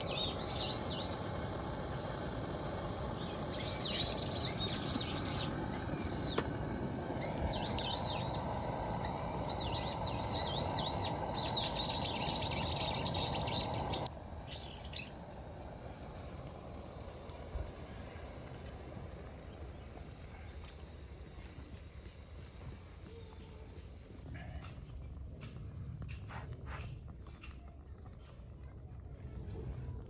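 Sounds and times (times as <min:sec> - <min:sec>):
small birds chirping: 0:00.0 - 0:15.4.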